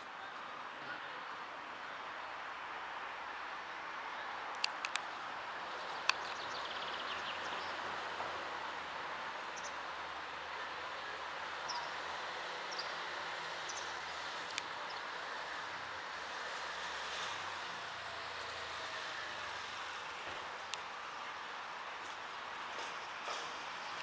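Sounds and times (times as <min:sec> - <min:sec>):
steady outdoor hiss: 0:00.0 - 0:24.0
sharp clicks: 0:04.5 - 0:05.1.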